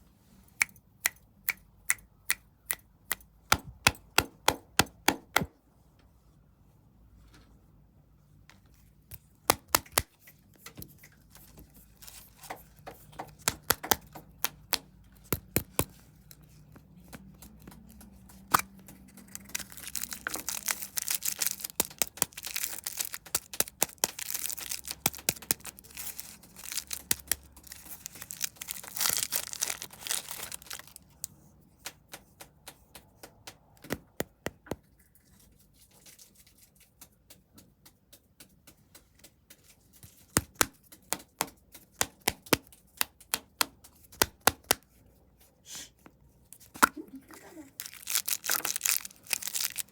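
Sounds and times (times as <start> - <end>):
sharp clicks and taps: 12.4 - 29.8, 30.7 - 34.9, 36.9 - 44.8
plastic wrappers crinkling and tearing: 13.4 - 31.3, 47.2 - 49.9.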